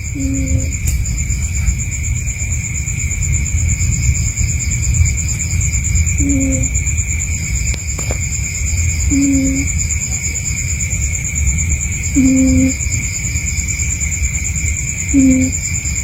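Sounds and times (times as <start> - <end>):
cat snoring: 9.1 - 9.7, 12.2 - 12.8, 15.2 - 15.6.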